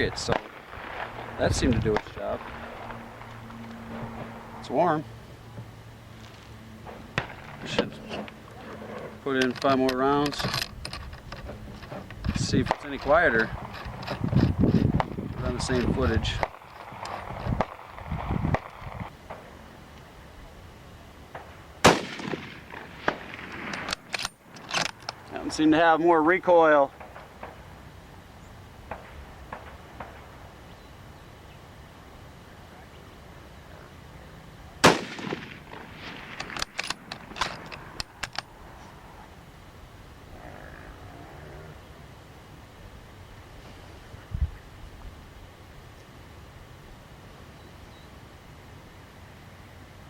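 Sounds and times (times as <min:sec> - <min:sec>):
rifle shot with echo: 0:00.0 - 0:03.3, 0:06.9 - 0:08.0, 0:21.3 - 0:24.2, 0:34.8 - 0:37.4
small handling clicks: 0:23.7 - 0:25.2, 0:36.3 - 0:38.5.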